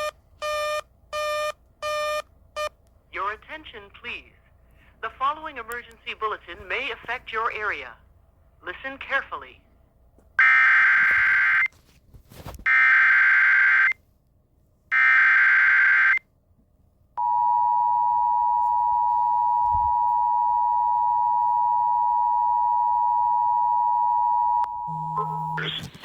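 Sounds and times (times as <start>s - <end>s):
dissonant two-tone attention signal: 17.2s - 25.9s.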